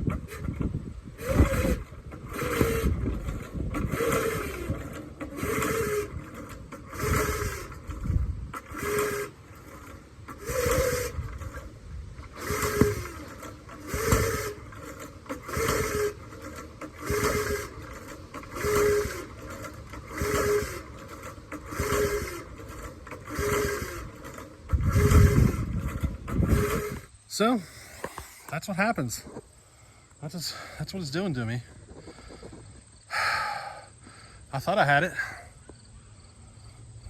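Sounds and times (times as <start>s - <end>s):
small gas engine surging: 0.0s - 28.6s.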